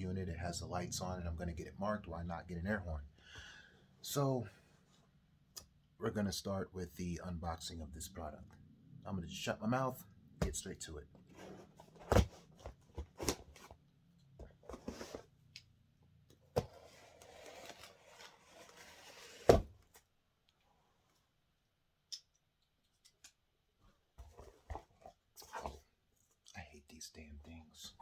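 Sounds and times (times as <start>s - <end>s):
cardboard rustling and scraping: 10.4s - 13.8s, 14.4s - 15.4s, 16.4s - 20.1s, 24.2s - 25.9s.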